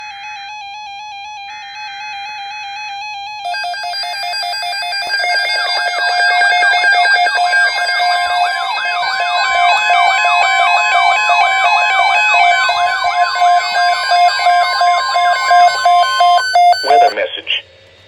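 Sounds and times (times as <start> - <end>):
falling siren-like sweeps: 3.5 - 17.1
warbling electronic alert tone: 3.5 - 17.2.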